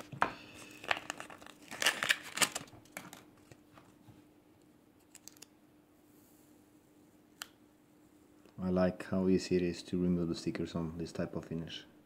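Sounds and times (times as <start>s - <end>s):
stickers being peeled off: 5.0s - 5.5s.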